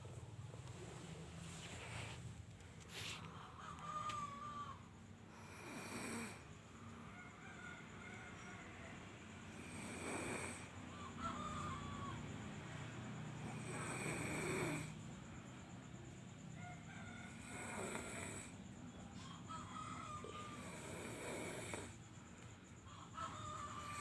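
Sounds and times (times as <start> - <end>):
man snoring: 5.3 - 6.5, 9.5 - 10.7, 13.4 - 15.0, 17.3 - 18.6, 20.6 - 22.0.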